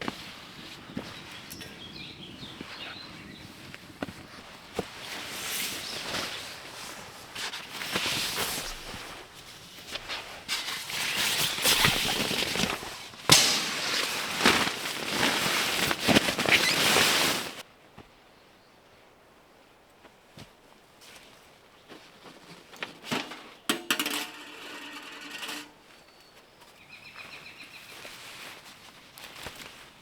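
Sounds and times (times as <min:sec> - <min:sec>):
irregular crackling and rustling: 0:04.1 - 0:17.6, 0:21.9 - 0:26.7.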